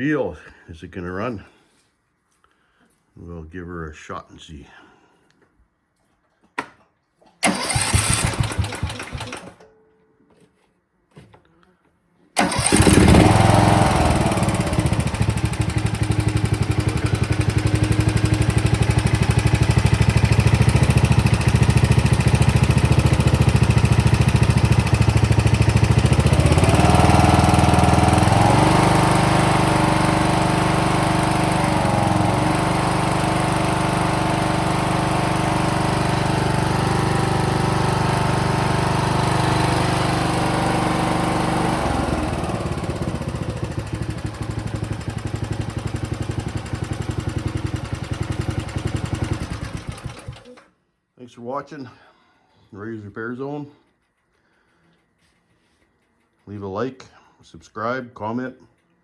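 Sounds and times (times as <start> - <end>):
small engine running: 7.4 - 9.6, 12.4 - 50.6.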